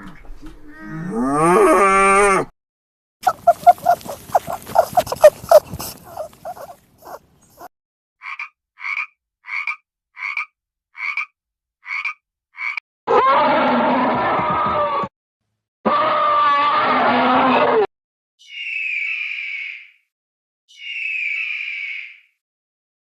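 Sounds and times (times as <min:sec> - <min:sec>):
frog croaking: 0:03.2 - 0:07.2, 0:08.2 - 0:12.8
loud continuous animal call: 0:03.2 - 0:08.4, 0:15.9 - 0:20.0, 0:20.7 - 0:22.4.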